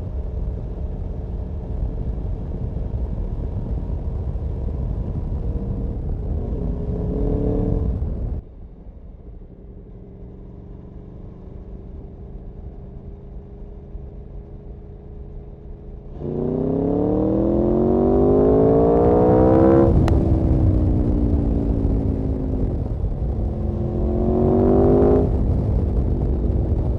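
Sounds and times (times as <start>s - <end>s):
motorcycle engine revving: 5.4s - 8.1s, 16.1s - 26.9s.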